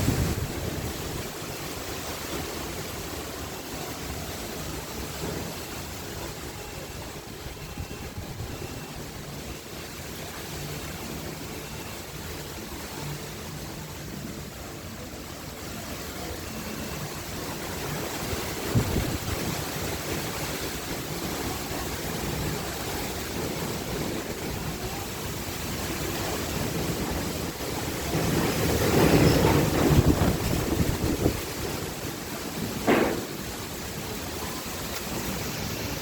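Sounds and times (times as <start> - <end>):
strong gusty wind: 0.0 - 3.2, 17.4 - 34.5.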